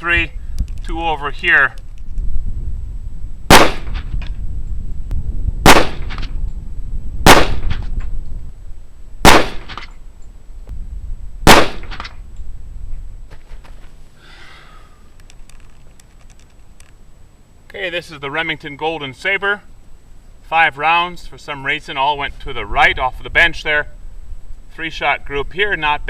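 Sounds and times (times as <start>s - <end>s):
pistol shots with echo: 3.5s - 4.0s, 5.7s - 6.3s, 7.3s - 7.8s, 9.2s - 9.9s, 11.5s - 12.1s
faint clicks: 15.1s - 17.0s.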